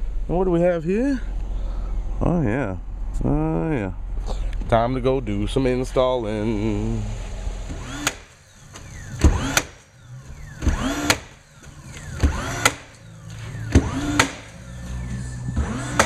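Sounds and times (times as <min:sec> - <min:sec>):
sweeping synth tones: 0:09.9 - 0:16.0.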